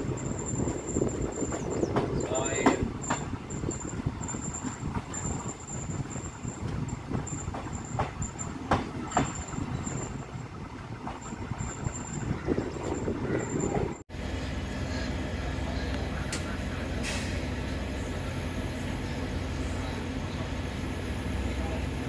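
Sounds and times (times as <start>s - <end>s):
wheels clacking over rail joints: 0.0s - 14.0s
train rumbling on track: 0.0s - 22.0s.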